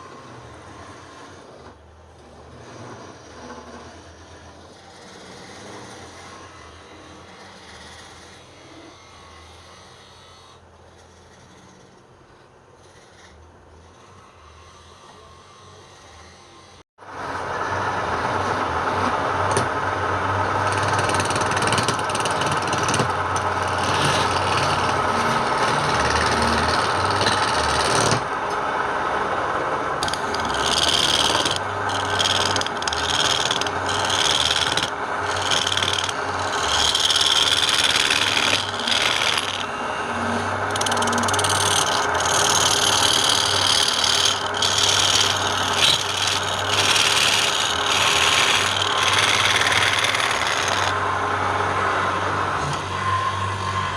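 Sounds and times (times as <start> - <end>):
power tool cutting wood: 20.3 - 28.3, 30.0 - 51.0.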